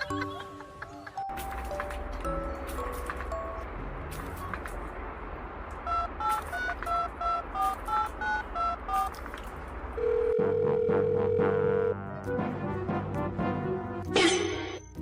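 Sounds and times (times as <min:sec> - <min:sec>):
telephone keypad beeps: 0:05.9 - 0:09.1
long steady dial tone: 0:10.0 - 0:12.0.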